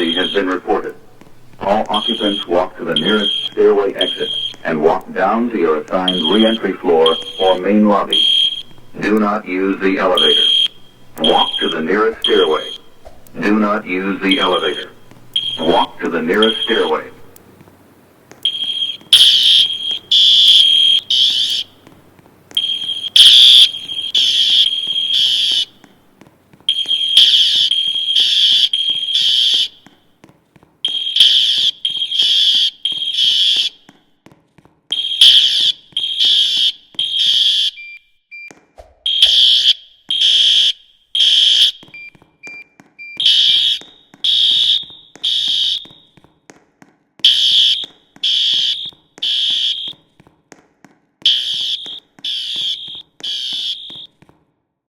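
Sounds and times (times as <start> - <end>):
fire alarm blasts: 0.0 - 17.4, 18.4 - 21.9, 22.5 - 26.0, 26.7 - 30.1, 30.8 - 33.9, 34.9 - 46.2, 47.2 - 50.1, 51.2 - 54.2.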